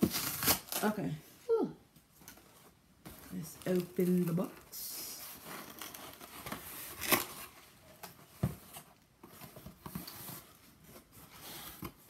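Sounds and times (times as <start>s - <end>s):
cardboard box rustling: 2.3s - 12.0s.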